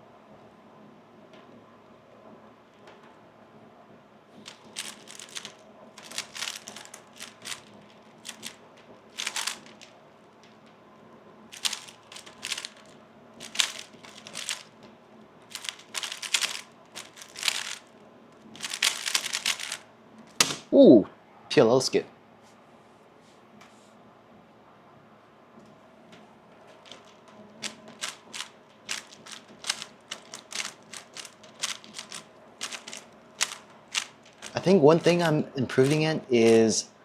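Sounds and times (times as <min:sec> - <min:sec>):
puzzle cube plastic clacks: 0:04.5 - 0:10.0, 0:11.5 - 0:14.7, 0:15.5 - 0:20.7, 0:26.8 - 0:36.6.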